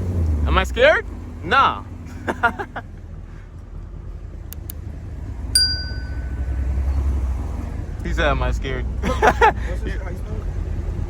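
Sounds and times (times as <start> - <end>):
car engine rumbling: 0.0 - 11.0
bright ding: 5.6 - 6.5.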